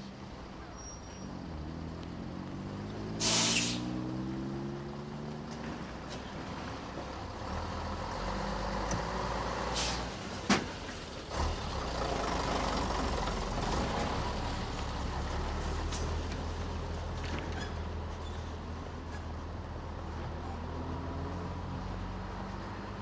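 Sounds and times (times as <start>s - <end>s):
heavy vehicle engines idling: 0.0s - 2.0s, 5.5s - 23.0s
air hiss: 3.2s - 4.0s.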